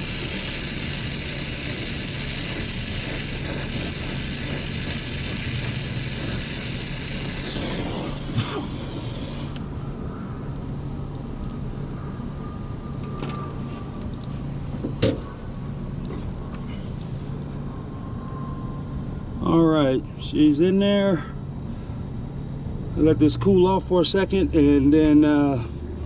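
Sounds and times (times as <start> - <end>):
torch flame hissing: 0.0 - 9.8.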